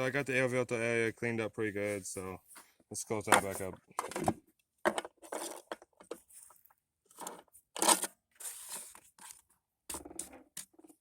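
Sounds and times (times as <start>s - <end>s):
plastic cover scraping and rustling: 4.9s - 11.0s.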